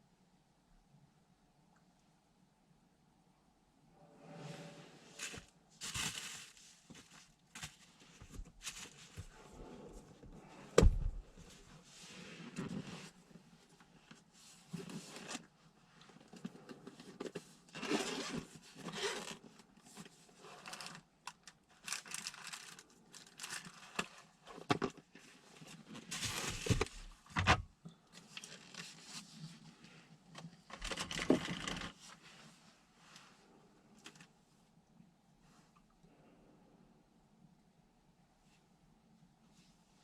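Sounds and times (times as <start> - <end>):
rustling and scraping: 3.9 - 21.0, 21.8 - 34.4.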